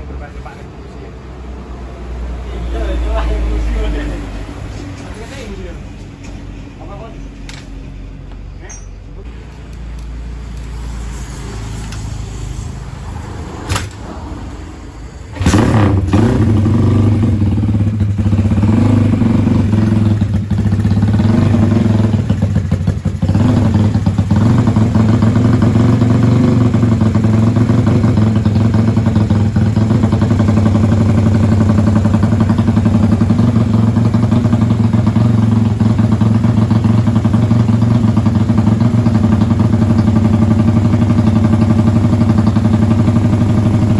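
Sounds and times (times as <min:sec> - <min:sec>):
motorcycle engine starting and idling: 0:12.9 - 0:43.9.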